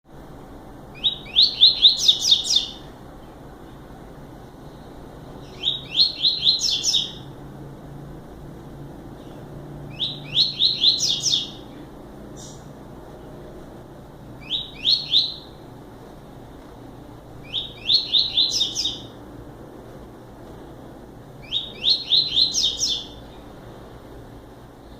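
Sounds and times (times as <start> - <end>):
faint steady hum: 0.1 - 24.9
seedeater bird singing: 0.9 - 3.8, 5.4 - 7.4, 9.2 - 13.3, 14.4 - 15.6, 17.4 - 19.2, 21.4 - 23.5.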